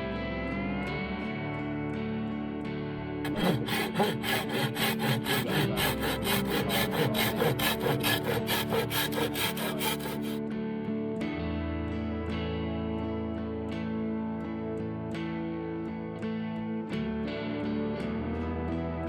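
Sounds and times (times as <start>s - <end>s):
soft guitar music: 0.0s - 4.8s, 10.4s - 19.0s
hand saw cutting wood: 3.3s - 10.4s.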